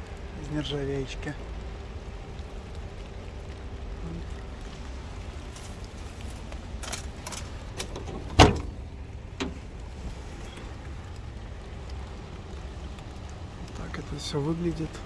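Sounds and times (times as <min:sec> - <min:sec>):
low steady rumble: 0:00.0 - 0:15.0
light knocks: 0:06.3 - 0:10.7.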